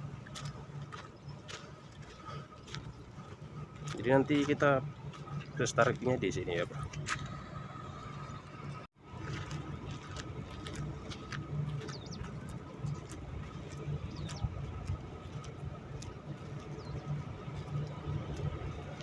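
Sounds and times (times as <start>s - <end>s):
low machinery hum: 0.0s - 19.0s
bird chirps: 11.8s - 12.6s.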